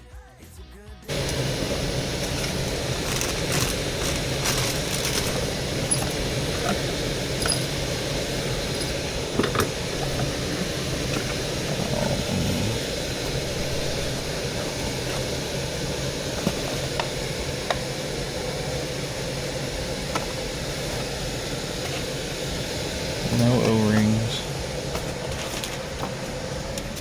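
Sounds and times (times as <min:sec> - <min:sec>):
mechanical hum and hiss: 0:01.1 - 0:27.0
hand tools clicking on metal: 0:02.2 - 0:06.8, 0:07.4 - 0:07.7.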